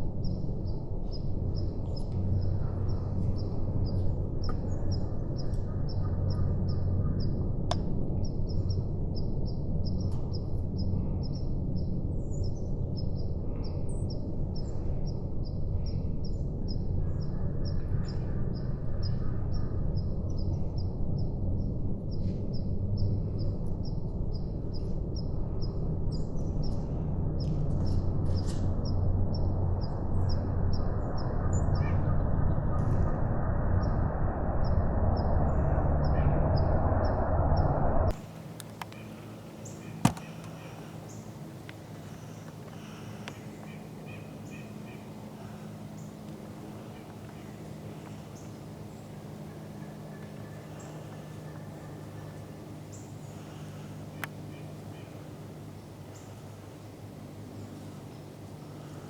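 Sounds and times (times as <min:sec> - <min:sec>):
steady low rumble: 0:00.0 - 0:59.0
short bird calls: 0:38.9 - 0:41.3, 0:42.0 - 0:45.8.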